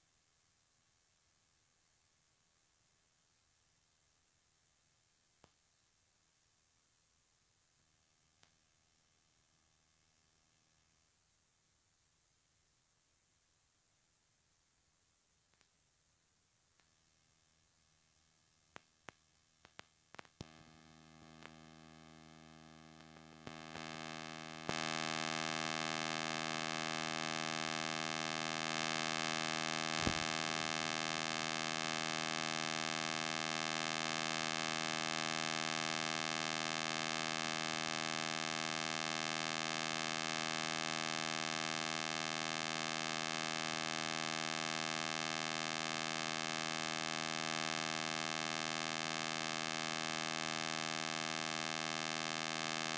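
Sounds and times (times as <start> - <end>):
steady electrical buzz: 19.7 - 52.9
clicks: 30.0 - 30.3.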